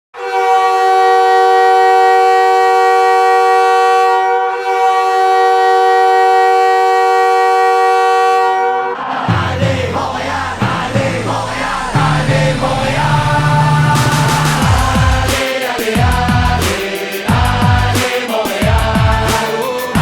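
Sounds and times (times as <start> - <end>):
arena goal horn blasts: 0.2 - 9.0.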